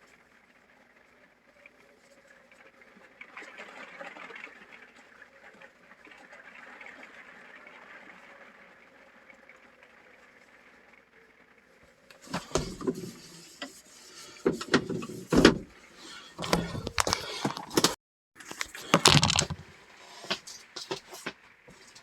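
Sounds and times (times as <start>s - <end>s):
rustling noise: 12.2s - 22.0s
irregular knocks and clatters: 16.4s - 21.9s.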